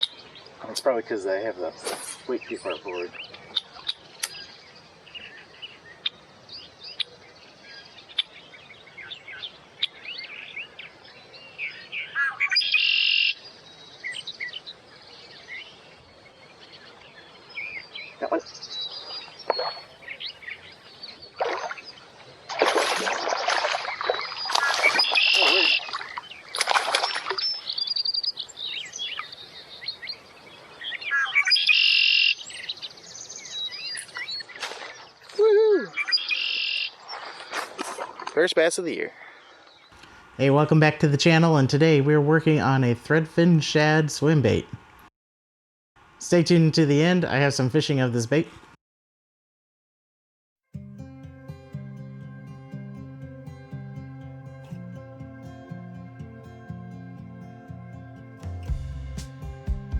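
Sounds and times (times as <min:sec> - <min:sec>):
birds chirping: 0:00.0 - 0:44.8, 0:51.5 - 0:59.9
buzzy bird call: 0:22.5 - 0:26.2.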